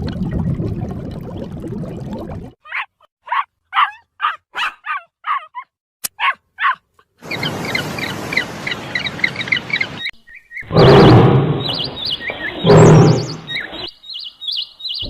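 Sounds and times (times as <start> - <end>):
dog barking in high yaps: 2.6 - 6.8
birds chirping: 6.2 - 15.0.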